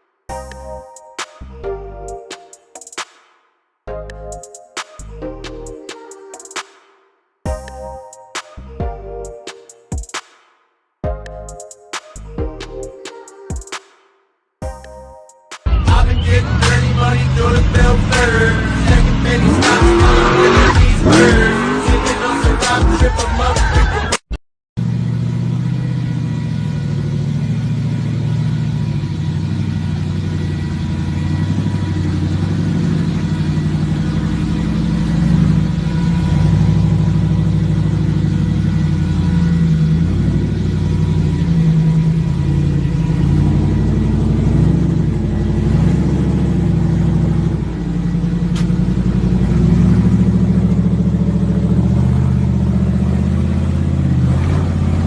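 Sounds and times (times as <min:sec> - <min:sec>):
off-road vehicle engine revving: 0:15.7 - 0:24.1, 0:24.8 - 0:55.0.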